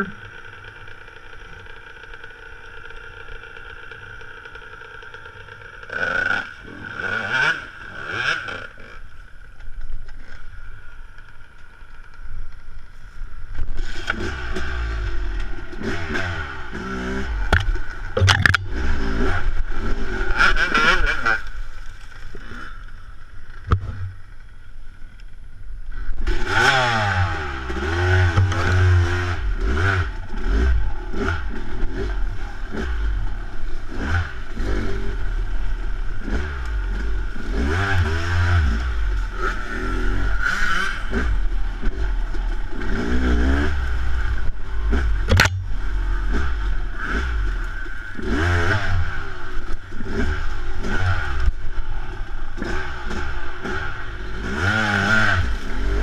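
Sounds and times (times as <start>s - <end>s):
dirt bike engine revving: 0.0s - 9.2s, 13.7s - 21.7s, 22.3s - 23.0s, 23.6s - 24.5s, 26.0s - 56.0s
sharp click: 45.3s - 45.6s.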